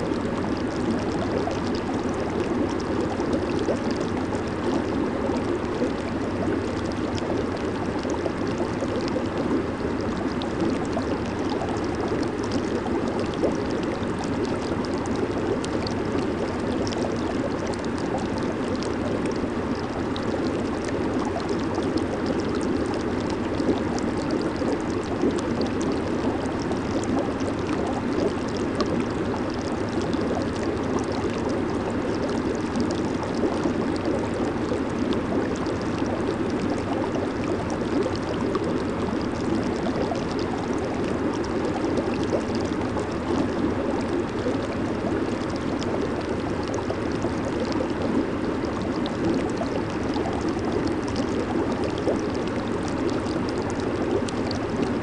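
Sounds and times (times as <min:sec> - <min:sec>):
hot tub water churning and bubbling: 0:00.0 - 0:55.0.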